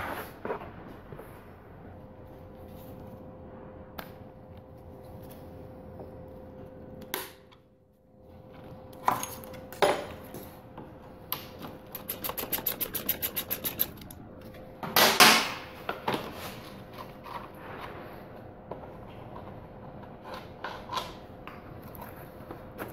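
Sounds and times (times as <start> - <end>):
rapid clicks: 11.9 - 14.2.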